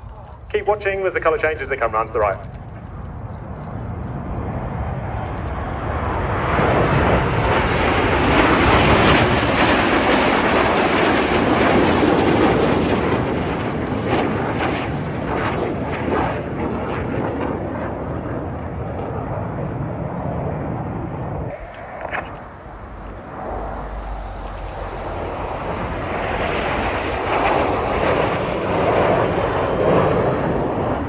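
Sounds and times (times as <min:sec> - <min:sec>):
jets rushing past: 0:21.5 - 0:31.0.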